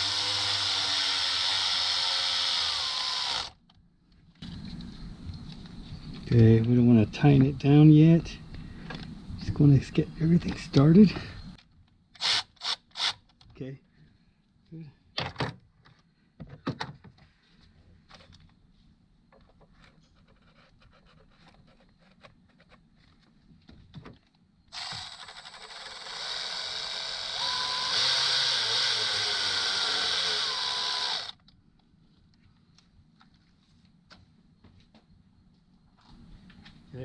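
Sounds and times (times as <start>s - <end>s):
cordless power tool whining: 0.0s - 3.6s, 24.7s - 31.4s.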